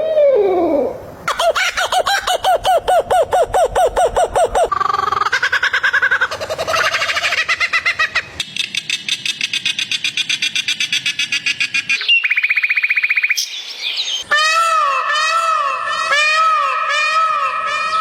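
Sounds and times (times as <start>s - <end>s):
arched animal calls: 1.3s - 18.0s
fast repeated chirping: 8.4s - 14.3s.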